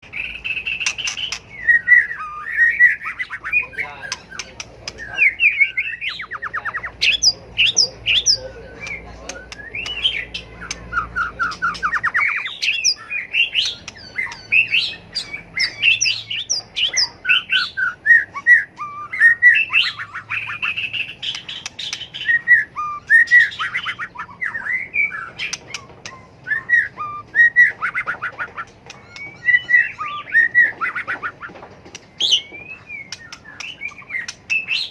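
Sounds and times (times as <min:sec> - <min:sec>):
songbird whistles and trills: 0:00.0 - 0:34.9
bird sharp clicks: 0:00.6 - 0:01.5, 0:08.8 - 0:12.2, 0:30.6 - 0:34.8.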